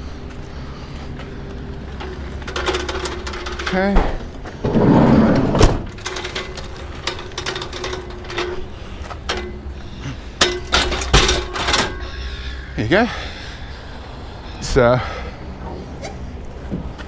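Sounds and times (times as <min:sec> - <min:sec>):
rustling: 0:00.0 - 0:12.6
low steady hum: 0:00.0 - 0:14.6
sharp knocks and clunks: 0:01.8 - 0:12.2.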